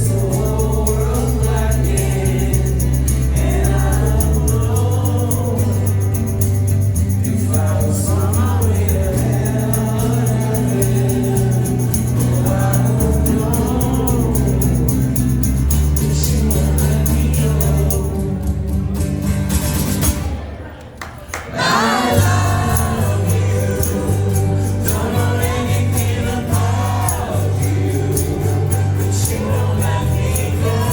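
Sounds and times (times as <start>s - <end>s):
voices singing together: 0.0s - 19.0s, 21.4s - 30.9s
strummed acoustic guitar: 0.0s - 20.6s, 21.5s - 30.9s
quick high rhythm: 21.7s - 30.9s.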